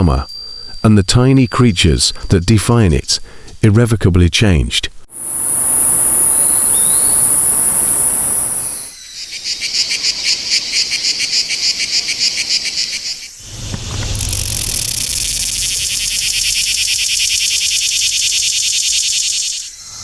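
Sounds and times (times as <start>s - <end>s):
cicadas buzzing: 5.1s - 20.0s.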